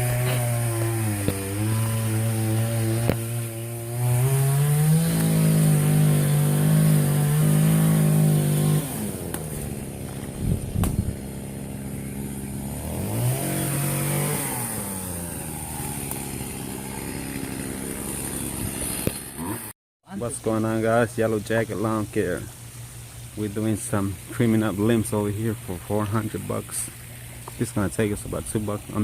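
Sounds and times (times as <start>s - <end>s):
two-stroke engine revving: 0.0s - 19.8s.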